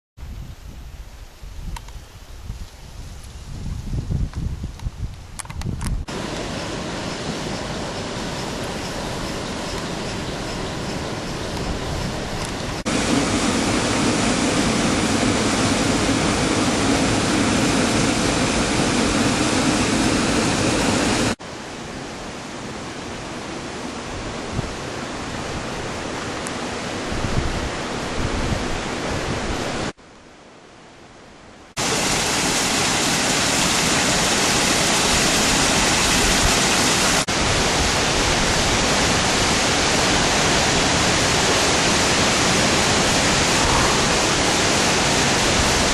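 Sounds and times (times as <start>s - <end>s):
waterfall rushing: 6.1s - 27.1s, 31.8s - 45.9s.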